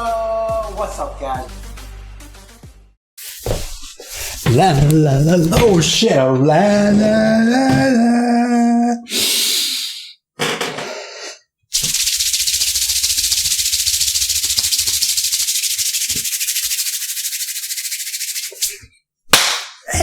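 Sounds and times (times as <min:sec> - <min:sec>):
fast shaker-like rattle: 0:11.8 - 0:18.8.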